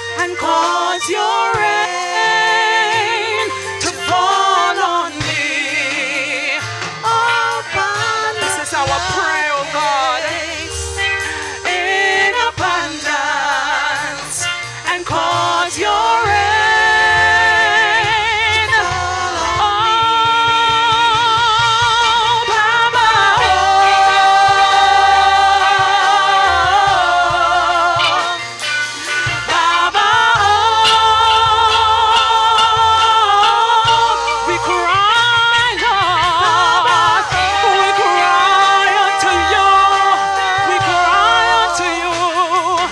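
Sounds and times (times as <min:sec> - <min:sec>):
instrumental accompaniment with bass: 0:00.0 - 0:42.9
person singing long wavering notes: 0:15.8 - 0:42.9.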